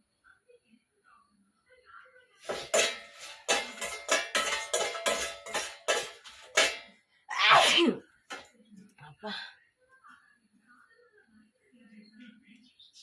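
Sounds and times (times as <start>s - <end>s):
metal spatula scraping frying pan: 2.4s - 6.9s.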